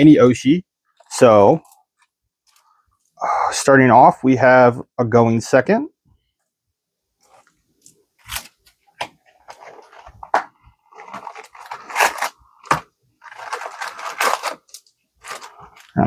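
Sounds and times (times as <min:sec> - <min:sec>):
packaging torn and crinkled: 0:08.2 - 0:08.6, 0:09.5 - 0:16.0.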